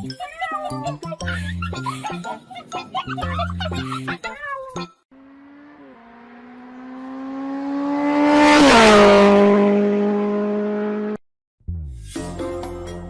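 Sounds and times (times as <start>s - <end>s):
motor vehicle passing by: 5.2s - 11.2s.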